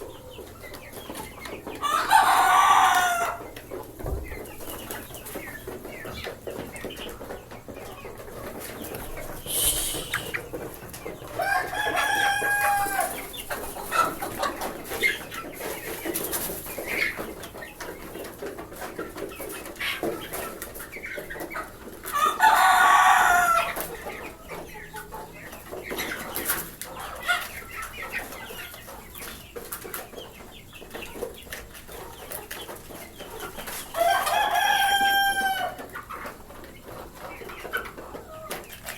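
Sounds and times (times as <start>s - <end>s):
chickens clucking: 0.0s - 38.9s
roosters crowing: 1.7s - 3.6s, 9.5s - 10.5s, 11.3s - 14.2s, 22.1s - 23.9s, 33.8s - 35.9s.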